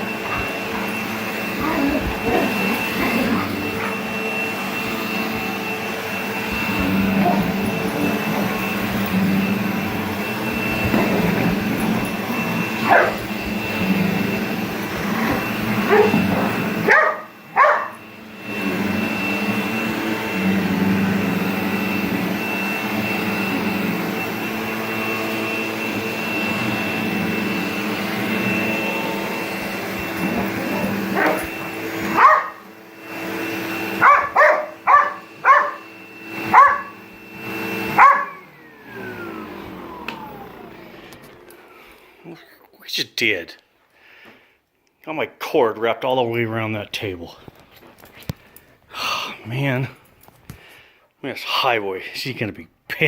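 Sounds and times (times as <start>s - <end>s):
vacuum cleaner whining: 0.0s - 42.8s
dog barking: 12.8s - 13.3s, 15.8s - 18.0s, 30.5s - 32.6s, 34.0s - 35.8s, 36.4s - 37.0s, 37.9s - 38.4s.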